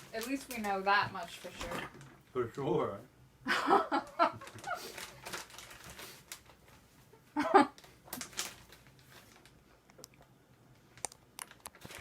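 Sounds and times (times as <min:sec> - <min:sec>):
food handling clicks and rustles: 0:00.0 - 0:02.2, 0:04.0 - 0:06.9, 0:07.8 - 0:12.0.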